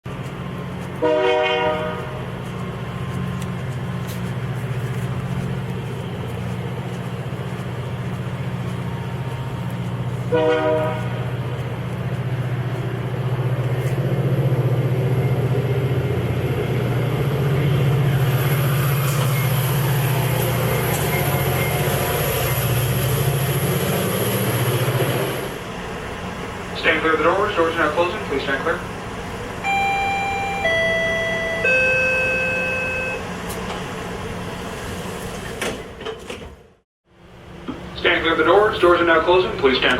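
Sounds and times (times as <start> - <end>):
train engine low rumble: 0.0 - 39.9
train horn blasts: 1.0 - 2.3, 10.3 - 11.3.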